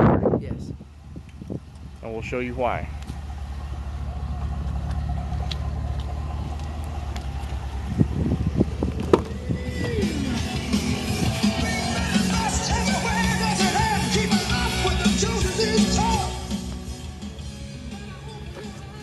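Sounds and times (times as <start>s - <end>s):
car engine idling: 0.7s - 19.0s
rock music with singing: 9.2s - 19.0s.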